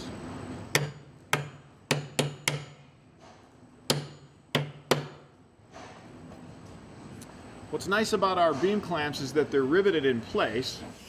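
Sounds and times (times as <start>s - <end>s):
hammer striking steel clamp: 0.7s - 2.9s, 3.9s - 5.3s.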